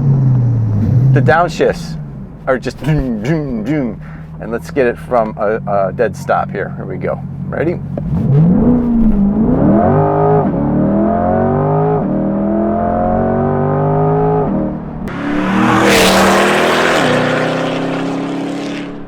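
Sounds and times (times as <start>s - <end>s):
sports car engine wailing: 0.0s - 19.0s
tires spinning on road: 8.0s - 19.0s.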